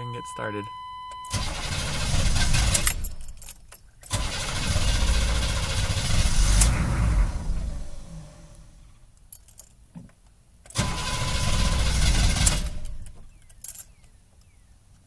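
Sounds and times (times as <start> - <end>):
diesel engine cranking: 1.1 - 9.0, 10.7 - 14.0.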